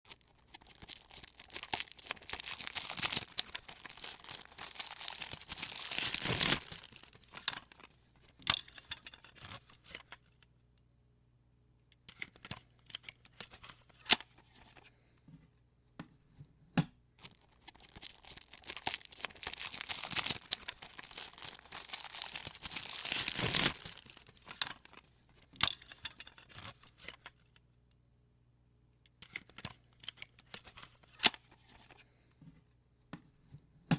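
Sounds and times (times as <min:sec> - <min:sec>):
packaging being torn open: 0:00.1 - 0:07.3, 0:17.2 - 0:24.5
clicks and rustles: 0:00.1 - 0:10.3, 0:17.2 - 0:27.4.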